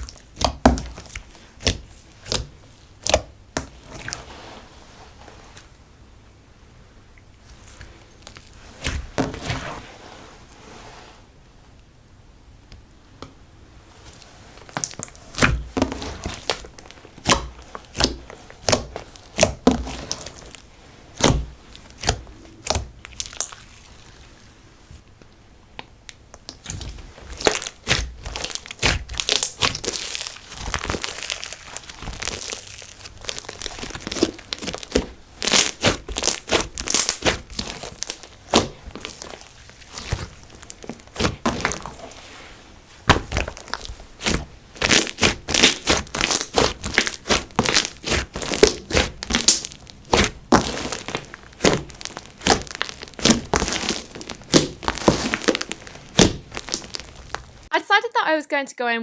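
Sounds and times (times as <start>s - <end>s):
slime crackling: 0.0s - 5.7s, 7.4s - 10.8s, 13.9s - 25.0s, 25.7s - 57.7s.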